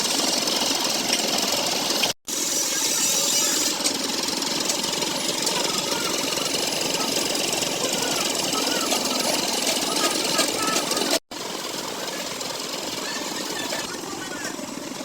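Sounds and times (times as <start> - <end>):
rapid machine rattle: 0.0 - 15.0.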